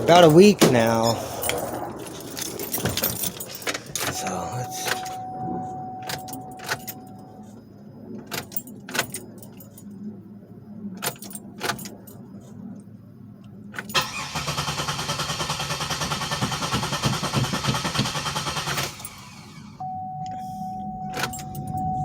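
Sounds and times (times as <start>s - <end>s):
car engine cranking: 0.0s - 7.4s, 13.8s - 19.8s
keys jingling: 0.0s - 7.6s, 8.3s - 10.0s, 11.0s - 12.3s, 20.3s - 22.0s.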